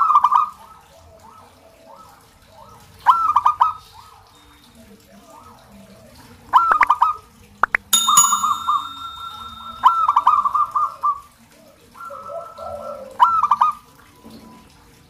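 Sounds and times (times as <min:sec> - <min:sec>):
ringing bell-like tone: 0:08.0 - 0:10.6.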